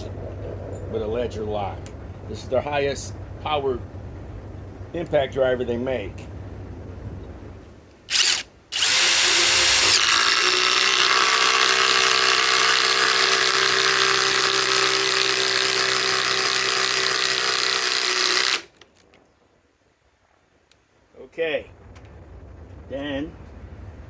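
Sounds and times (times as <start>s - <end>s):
impact driver driving screw into wood: 8.1s - 18.8s.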